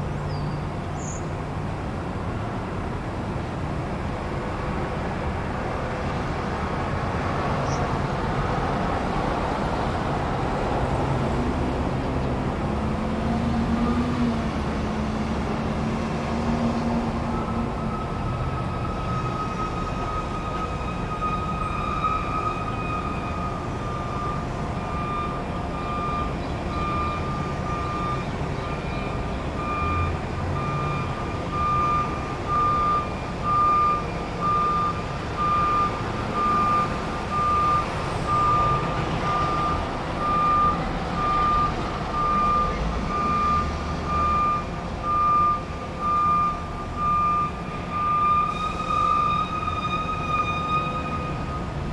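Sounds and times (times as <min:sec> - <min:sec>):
engine and traffic rumble: 0:00.0 - 0:51.9
truck backup alarm beeping: 0:16.1 - 0:51.9.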